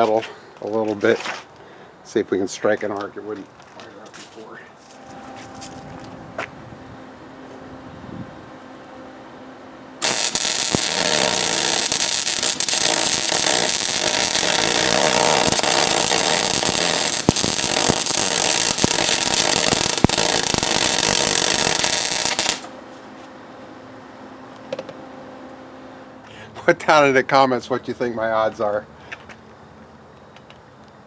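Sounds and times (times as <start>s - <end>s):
sharp welding pops: 10.0s - 22.8s
arc welder crackling: 10.0s - 22.9s.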